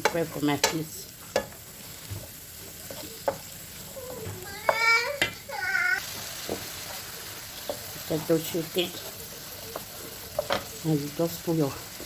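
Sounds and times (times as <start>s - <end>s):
food sizzling in a pot: 0.0s - 12.0s
spoon knocking against pot: 4.1s - 5.5s.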